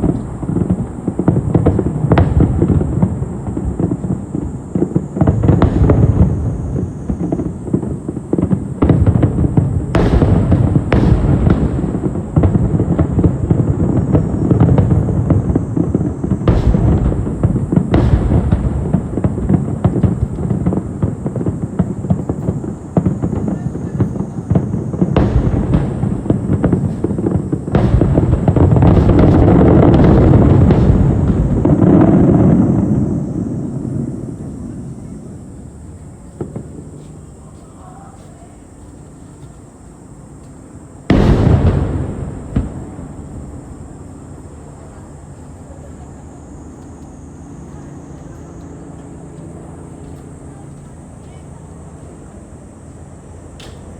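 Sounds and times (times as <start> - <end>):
faint hum: 0.0 - 53.9
fireworks bursting: 0.0 - 53.9
low outdoor rumble: 0.0 - 53.9.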